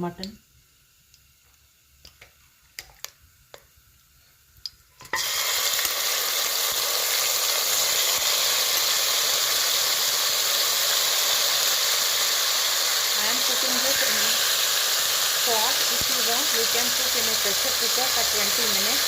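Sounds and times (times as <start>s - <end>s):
meat sizzling in hot oil: 5.0s - 19.0s.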